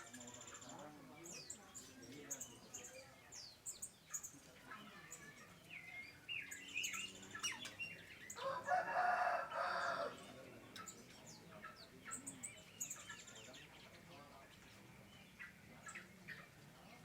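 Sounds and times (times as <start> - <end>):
aviary birds chirping: 0.0 - 17.0.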